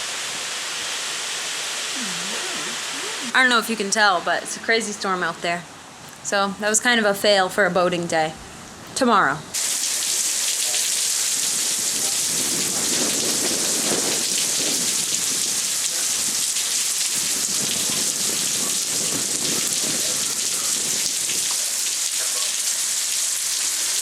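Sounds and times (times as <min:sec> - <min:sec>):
heavy rain pouring: 0:00.0 - 0:05.5, 0:09.6 - 0:24.0
thunder rumbling: 0:11.3 - 0:16.4, 0:17.1 - 0:21.4.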